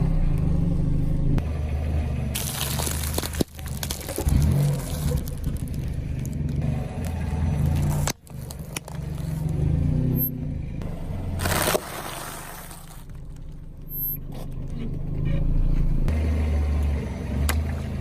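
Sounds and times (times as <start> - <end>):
car engine running slowly: 0.0 - 18.0
crackling and scraping: 2.3 - 9.7, 11.3 - 15.9.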